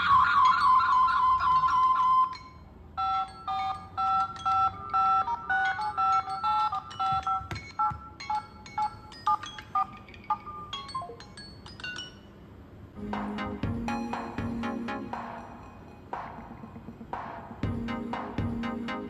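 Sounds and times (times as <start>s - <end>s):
phone chime: 0.3s - 12.2s.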